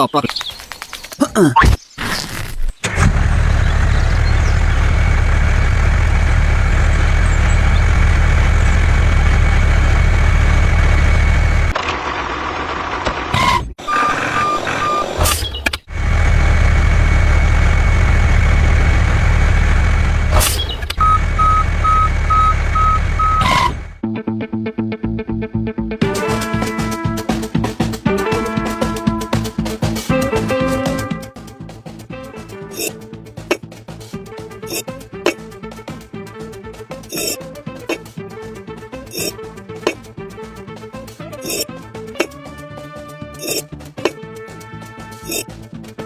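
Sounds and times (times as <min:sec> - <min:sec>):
truck engine running: 0:02.8 - 0:13.9, 0:15.8 - 0:24.0
reversing alarm beeping: 0:13.8 - 0:15.2, 0:21.0 - 0:23.8.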